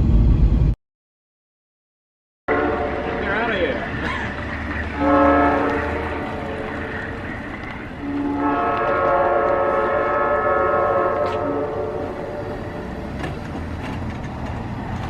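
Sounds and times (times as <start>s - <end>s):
train air horn blasts: 2.5s - 3.8s, 4.8s - 13.0s.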